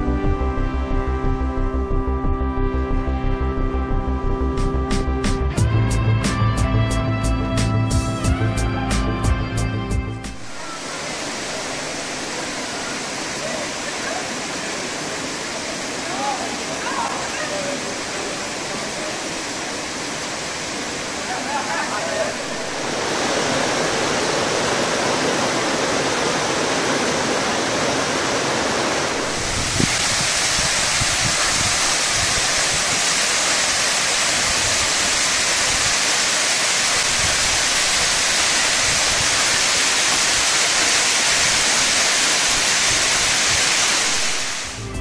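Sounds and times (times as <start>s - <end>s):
waterfall rushing: 10.3s - 45.0s.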